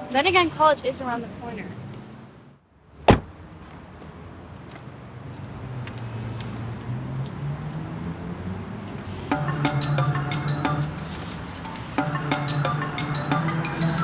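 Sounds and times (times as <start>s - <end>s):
road noise: 0.0s - 14.0s
car door slamming: 3.1s - 3.4s.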